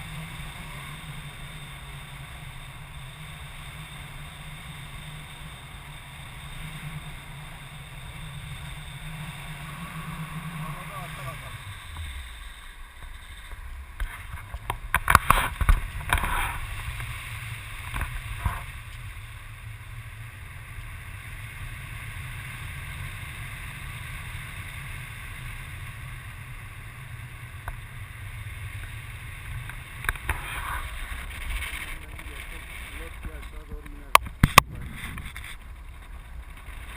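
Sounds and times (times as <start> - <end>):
wind rushing over microphone: 29.4 - 36.9.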